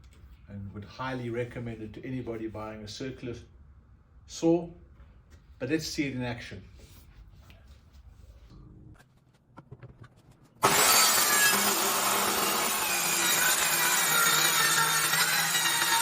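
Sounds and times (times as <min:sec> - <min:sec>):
circular saw cutting wood: 0:10.6 - 0:16.0.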